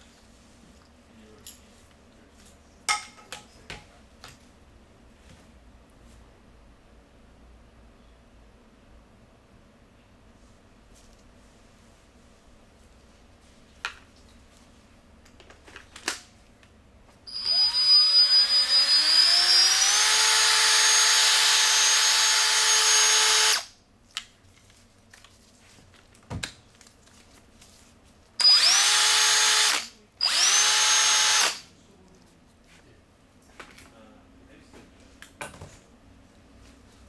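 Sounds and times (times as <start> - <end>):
cordless drill motor whine: 17.3 - 23.7, 28.4 - 31.7.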